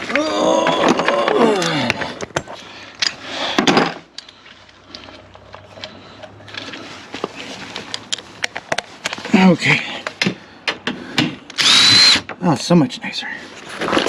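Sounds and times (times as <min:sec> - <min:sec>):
impact tool motor whine: 0:11.6 - 0:12.3.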